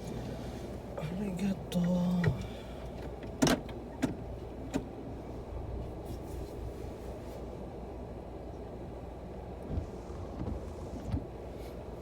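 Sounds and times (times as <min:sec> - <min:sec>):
low rumble inside a car: 0:00.0 - 0:12.0.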